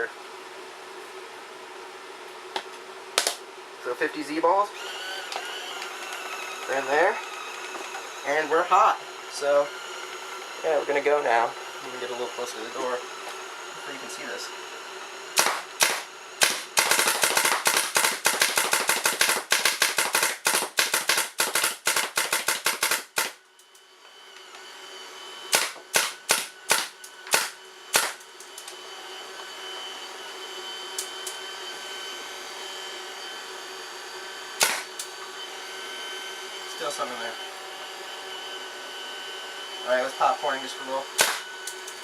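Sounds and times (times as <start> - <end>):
steady hum: 0.0 - 42.0
paintball marker firing: 15.4 - 23.4, 25.5 - 28.2, 34.6 - 35.0, 41.2 - 41.4.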